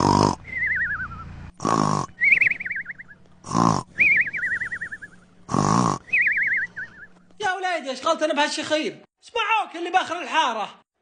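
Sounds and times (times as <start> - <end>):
cartoon snoring: 0.0 - 0.8, 1.5 - 2.3, 3.4 - 6.2.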